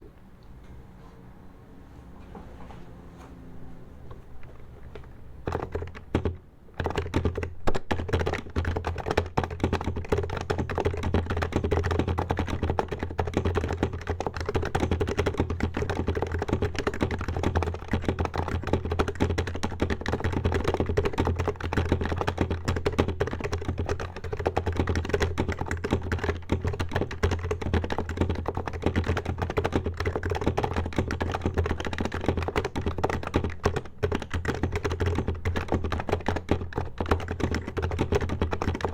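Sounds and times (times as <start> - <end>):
fast keyboard typing: 4.4 - 38.9.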